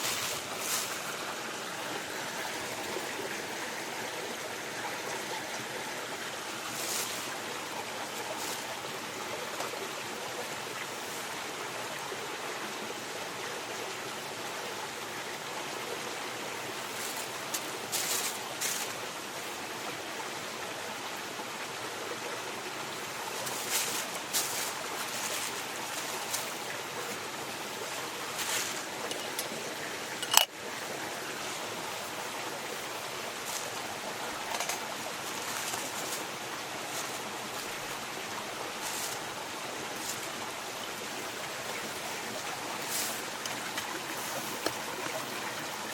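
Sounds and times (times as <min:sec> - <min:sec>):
mountain stream flowing: 0:00.0 - 0:45.9.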